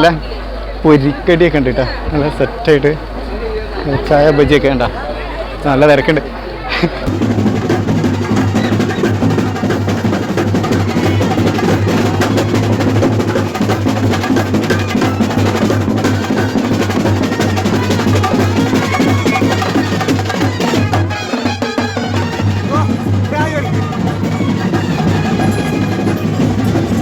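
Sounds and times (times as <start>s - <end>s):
drums beaten with sticks: 7.1s - 27.0s.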